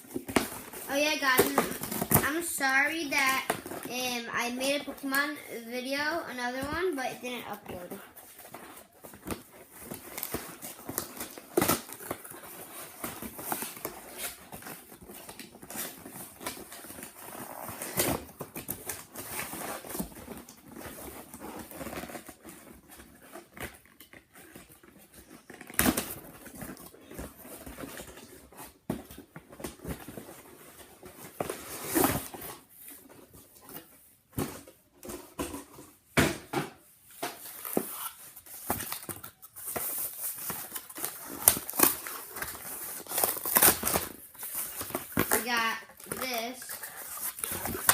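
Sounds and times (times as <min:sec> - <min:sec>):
packaging rustling and crinkling: 0:37.1 - 0:47.9.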